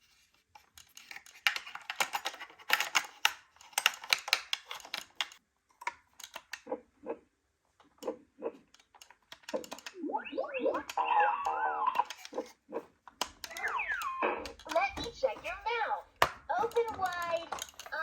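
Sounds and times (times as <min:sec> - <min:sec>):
light clicking and tapping: 0:13.0 - 0:18.0.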